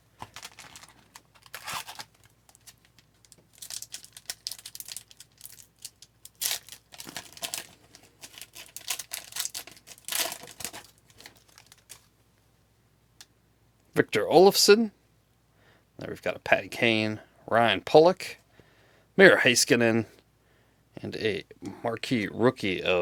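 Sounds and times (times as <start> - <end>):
wrapper crinkling and tearing: 0.0 - 12.1.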